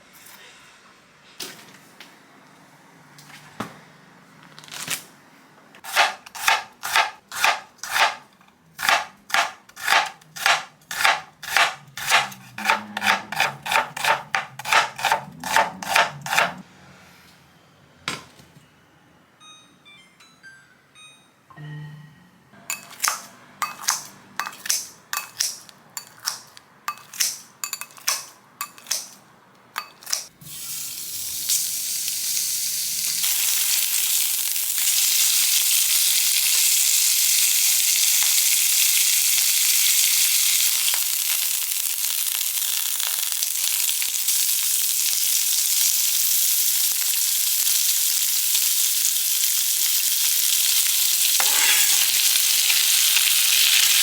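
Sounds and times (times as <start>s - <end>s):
food sizzling in frying pan: 30.5s - 54.0s.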